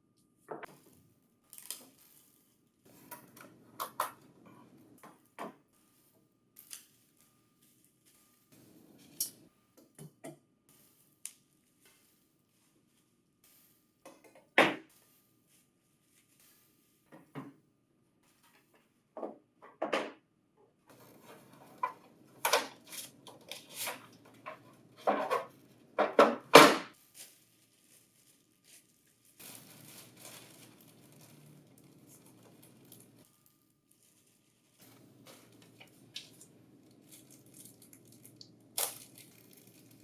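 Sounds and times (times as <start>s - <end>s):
packaging crinkling: 21.0s - 25.8s, 27.0s - 33.3s, 33.9s - 40.0s.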